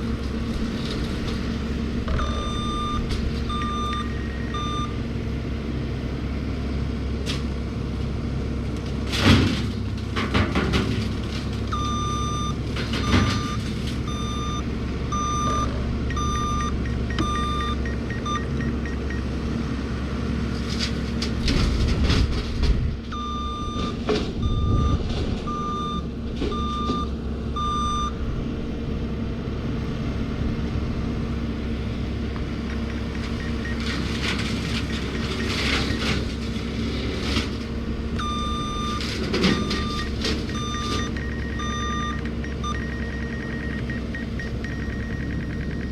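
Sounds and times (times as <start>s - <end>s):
forestry mulcher running under load: 0.0s - 45.9s
drone warning beeps: 2.0s - 5.1s, 11.7s - 19.4s, 23.1s - 28.2s, 32.4s - 36.6s, 38.1s - 45.9s.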